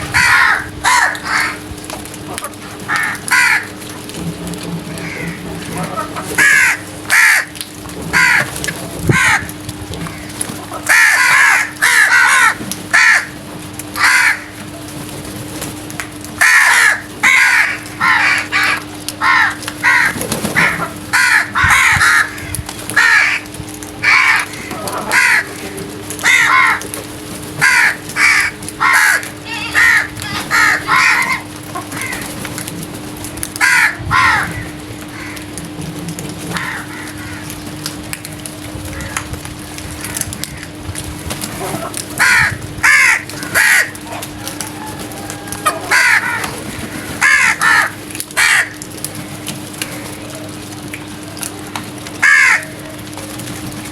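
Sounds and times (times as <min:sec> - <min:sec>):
crows cawing: 0:00.1 - 0:01.7, 0:02.5 - 0:03.9, 0:05.0 - 0:14.6, 0:16.3 - 0:27.0, 0:27.6 - 0:32.4, 0:33.6 - 0:35.6, 0:36.5 - 0:37.8, 0:38.9 - 0:39.3, 0:40.0 - 0:40.8, 0:41.8 - 0:48.9, 0:52.2 - 0:52.9.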